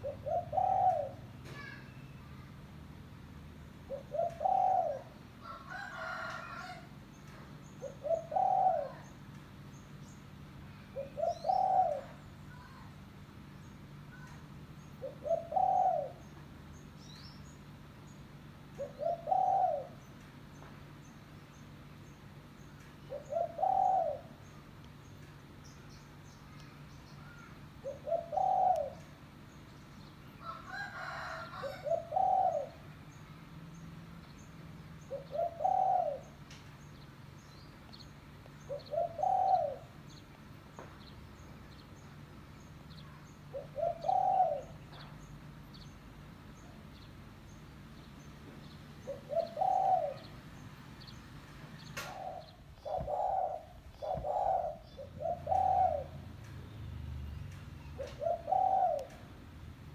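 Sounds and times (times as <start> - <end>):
dove cooing: 0.0 - 1.9, 3.8 - 6.9, 7.8 - 9.2, 10.8 - 12.8, 15.0 - 16.4, 18.7 - 20.2, 23.0 - 24.6, 27.2 - 29.3, 30.4 - 33.0, 35.0 - 36.7, 38.6 - 40.2, 43.0 - 45.2, 49.0 - 51.1, 51.8 - 56.6, 57.8 - 59.4.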